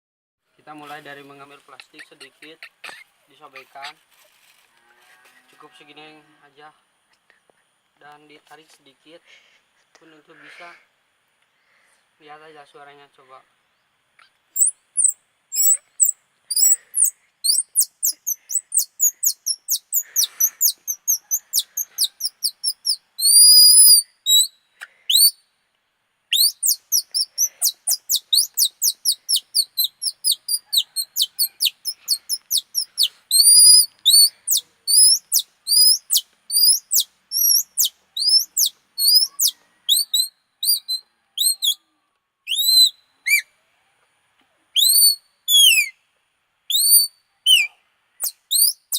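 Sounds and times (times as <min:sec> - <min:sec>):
plastic strip bird-call chirps: 0:26.3 - 0:41.8, 0:42.5 - 0:43.4, 0:44.8 - 0:45.9, 0:46.7 - 0:48.9.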